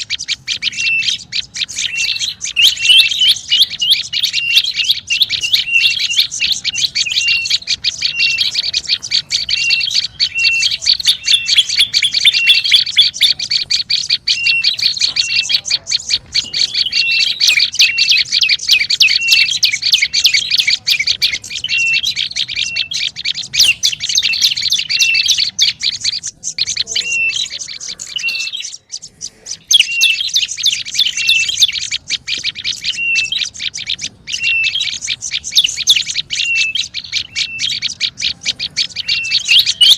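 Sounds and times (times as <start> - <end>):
songbird chirping: 0.0 - 39.9.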